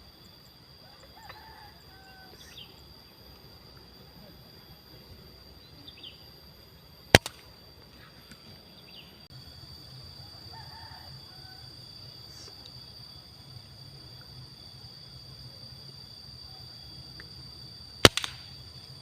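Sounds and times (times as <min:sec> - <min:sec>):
insects droning: 0:00.0 - 0:19.0
faint bird chirps: 0:00.3 - 0:03.2, 0:05.4 - 0:06.8
air rifle shot: 0:07.1 - 0:07.4, 0:18.0 - 0:18.6.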